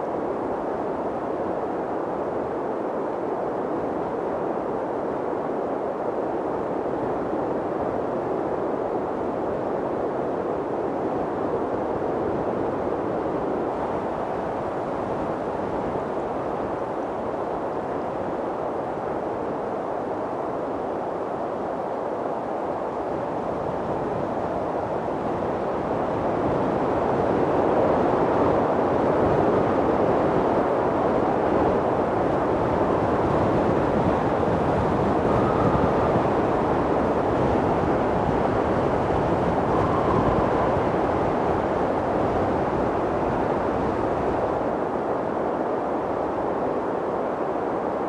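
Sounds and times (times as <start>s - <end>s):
faint wind howl: 0.0s - 48.0s
strong wind rushing: 0.0s - 48.0s.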